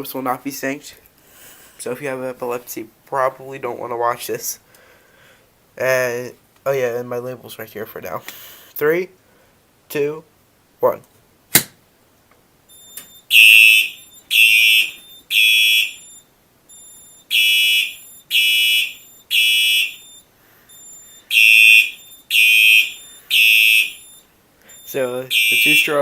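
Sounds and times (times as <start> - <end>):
fire alarm horn blasts: 12.7 - 26.0.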